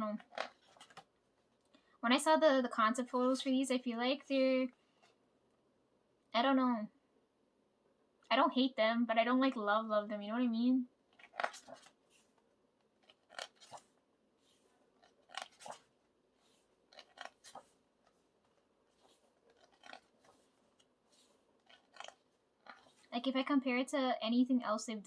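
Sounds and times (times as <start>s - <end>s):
glossy pages turning: 0.2s - 1.2s, 11.1s - 23.2s.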